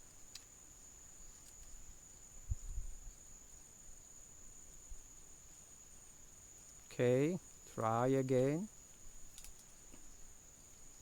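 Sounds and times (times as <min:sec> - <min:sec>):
insects chirring: 0:00.0 - 0:11.0.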